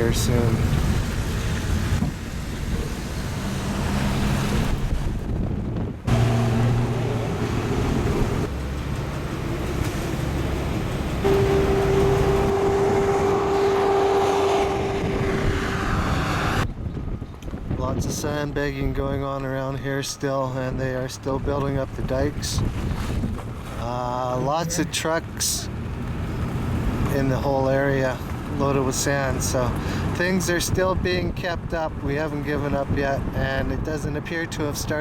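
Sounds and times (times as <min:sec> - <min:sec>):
wind buffeting microphone: 0:00.0 - 0:25.0, 0:25.7 - 0:35.0
car engine and road noise: 0:00.0 - 0:35.0
steady hum: 0:11.2 - 0:16.7.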